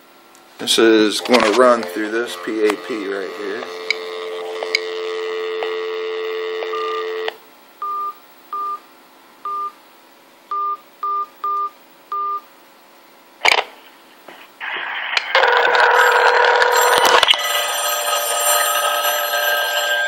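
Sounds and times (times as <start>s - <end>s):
telephone dial tone: 1.2s - 7.4s, 15.4s - 19.8s
touch-tone beeps: 3.6s - 8.8s.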